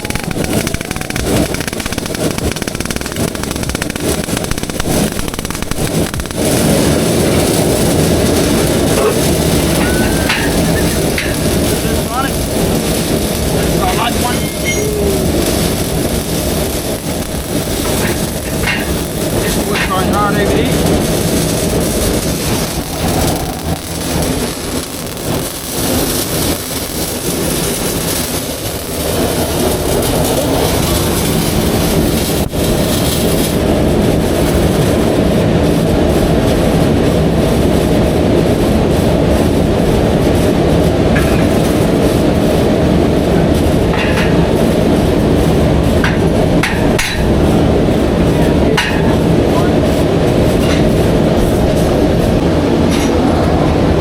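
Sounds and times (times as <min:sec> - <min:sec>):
loud rushing hiss: 0:00.0 - 0:35.0.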